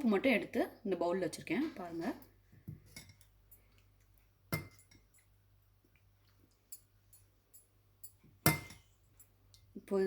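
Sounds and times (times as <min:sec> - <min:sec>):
spoon clinking on a bowl: 0:04.5 - 0:05.3, 0:06.5 - 0:09.6.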